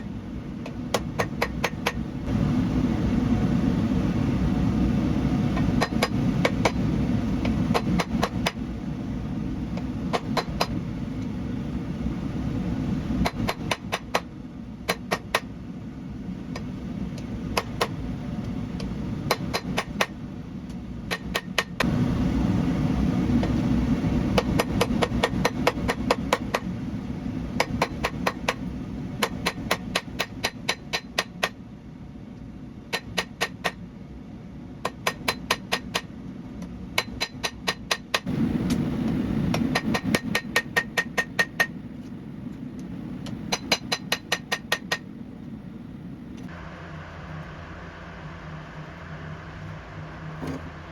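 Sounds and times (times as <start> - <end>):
hammer striking steel on anvil: 0.6 - 2.0, 5.6 - 6.8, 10.1 - 10.8, 13.2 - 14.3, 14.9 - 15.5, 19.3 - 20.2, 29.2 - 31.6, 32.9 - 33.8, 34.8 - 36.1, 37.0 - 38.3, 39.7 - 41.8, 43.5 - 45.1.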